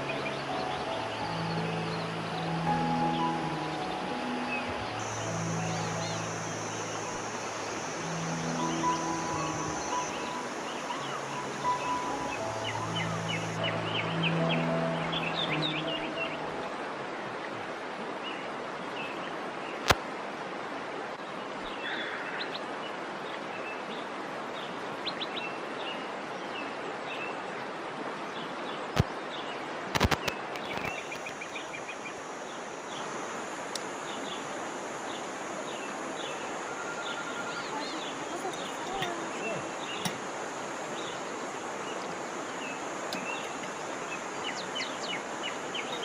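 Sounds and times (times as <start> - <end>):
small birds chirping: 0.0 - 16.4, 30.3 - 46.0
waterfall rushing: 0.0 - 21.0, 29.9 - 46.0.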